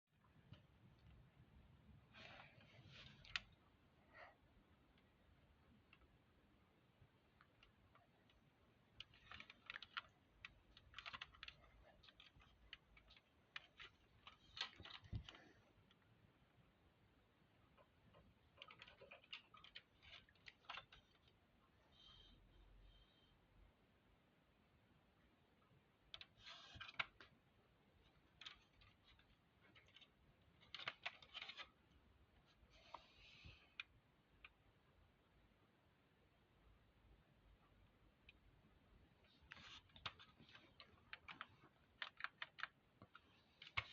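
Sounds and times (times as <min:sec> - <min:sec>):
handling clicks and rustles: 0:07.3 - 0:16.1, 0:39.2 - 0:43.9.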